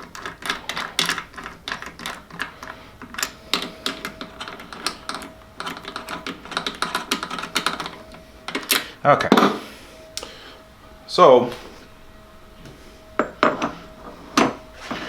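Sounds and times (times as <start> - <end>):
metallic clicking and ratcheting: 0.0 - 8.8
faint steady whine: 0.0 - 15.0.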